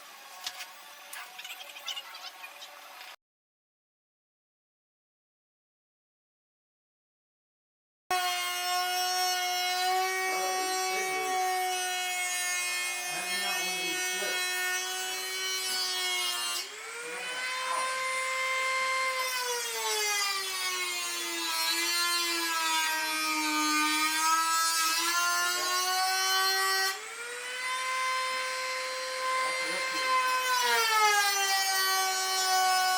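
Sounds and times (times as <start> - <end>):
power tool cutting sheet metal: 8.1 - 32.9.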